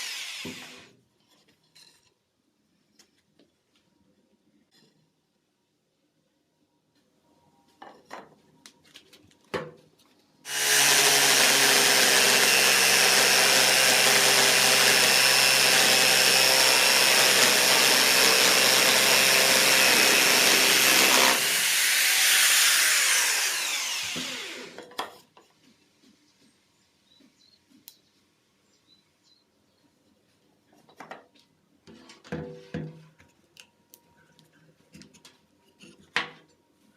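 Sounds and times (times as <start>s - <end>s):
electric drill motor running: 0.0s - 0.9s, 10.5s - 24.8s.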